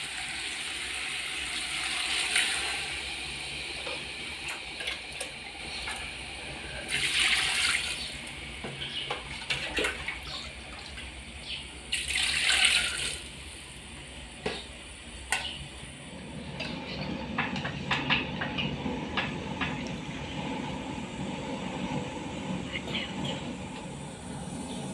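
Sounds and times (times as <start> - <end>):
water pouring: 6.9 - 8.0, 11.9 - 13.4.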